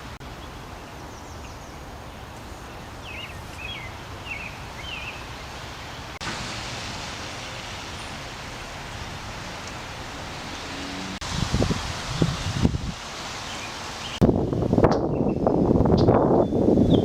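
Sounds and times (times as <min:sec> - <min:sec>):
leaves rustling in a breeze: 0:00.0 - 0:17.0.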